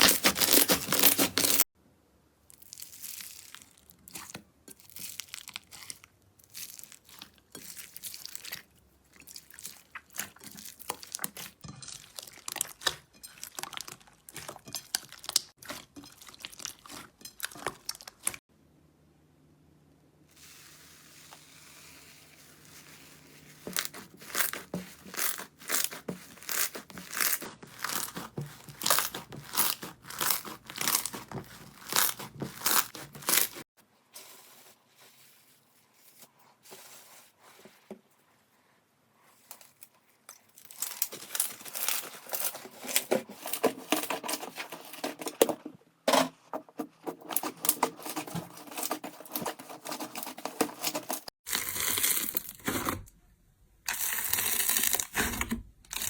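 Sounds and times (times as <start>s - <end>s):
slime crackling and popping: 0.0s - 1.6s, 23.7s - 33.6s.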